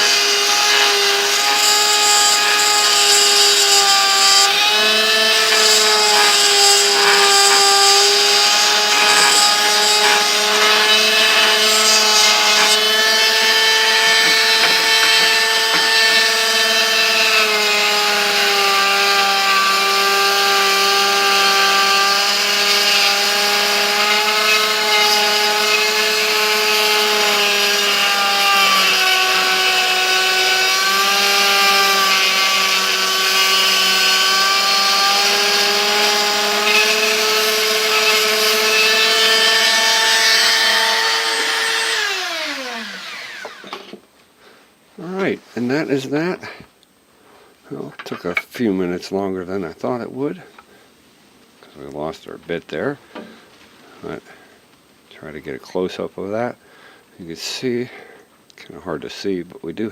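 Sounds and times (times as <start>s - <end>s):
rotary tool whining: 0.0s - 44.0s.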